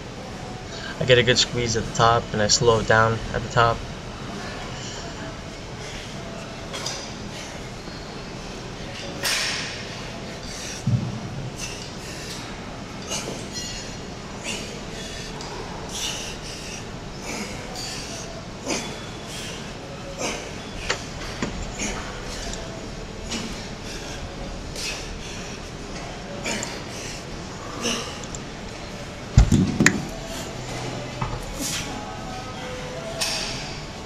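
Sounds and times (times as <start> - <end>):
steady hum: 0.0 - 34.0
heavy thud: 29.4 - 30.1.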